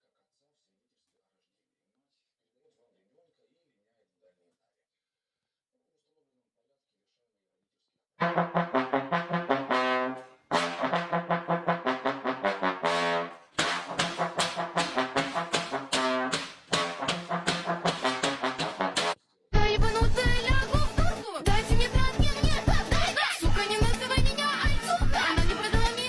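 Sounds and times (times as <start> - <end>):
brass melody of detached notes: 8.2 - 26.0.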